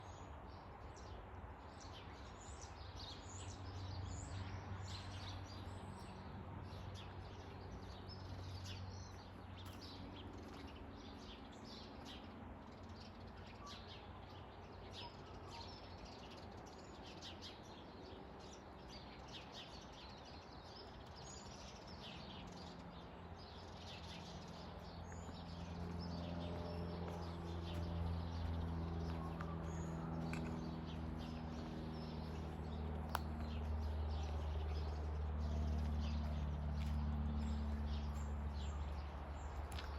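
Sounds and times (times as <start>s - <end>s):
birds chirping: 19.4s - 39.9s.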